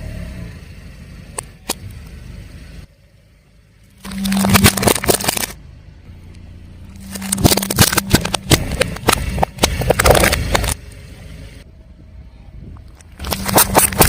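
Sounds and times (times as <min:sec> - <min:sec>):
low car hum: 0:00.0 - 0:14.0
car tyre crushing crunchy objects: 0:03.8 - 0:05.8, 0:06.8 - 0:11.6, 0:12.8 - 0:14.0.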